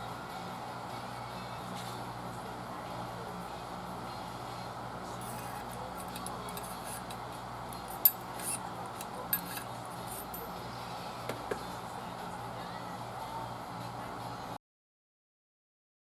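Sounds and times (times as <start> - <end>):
steady low hum: 0.0 - 14.6
sharp metallic clinks: 7.8 - 10.6.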